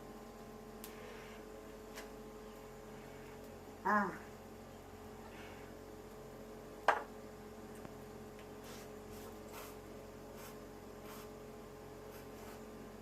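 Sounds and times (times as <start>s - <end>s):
steady low hum: 0.0s - 13.0s
soft scraping strokes: 8.6s - 11.4s, 12.1s - 12.8s.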